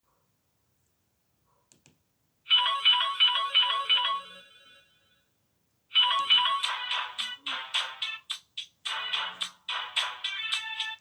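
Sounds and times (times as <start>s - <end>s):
phone ringtone: 2.5s - 5.3s, 5.9s - 11.0s.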